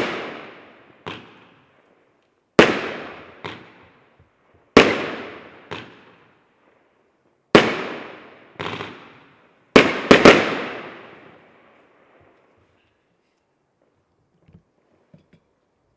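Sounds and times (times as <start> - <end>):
fireworks bangs with echo: 0.0 - 1.7, 2.6 - 4.0, 4.7 - 6.3, 7.5 - 11.6.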